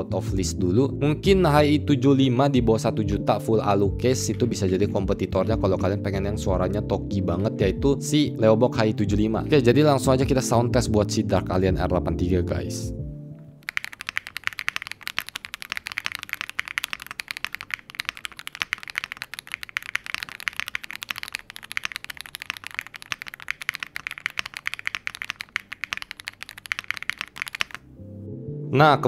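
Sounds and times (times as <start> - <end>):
mechanical keyboard typing: 13.6 - 27.9.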